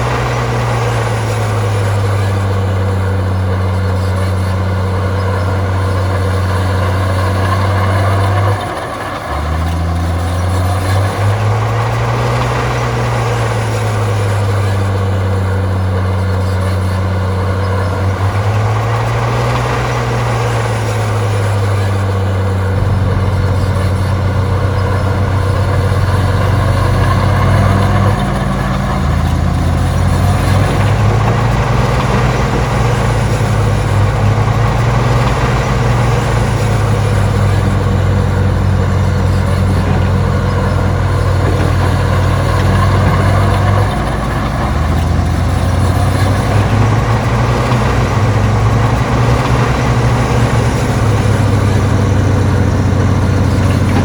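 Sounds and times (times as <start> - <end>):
heavy diesel engine under load: 0.0 - 54.0.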